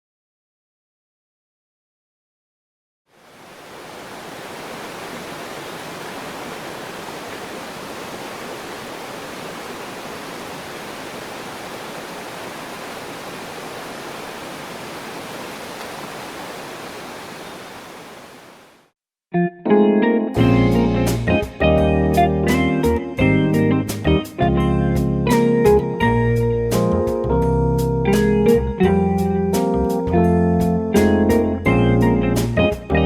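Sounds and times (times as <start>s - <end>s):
flowing water rushing: 3.1s - 18.9s.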